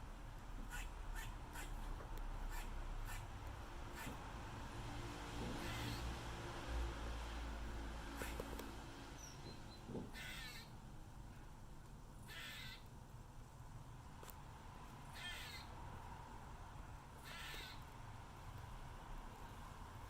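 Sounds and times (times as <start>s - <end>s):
squirrel calling: 0.7s - 4.2s, 5.5s - 6.1s, 8.2s - 8.6s, 9.2s - 10.8s, 12.2s - 12.9s, 15.1s - 15.8s, 17.2s - 17.9s.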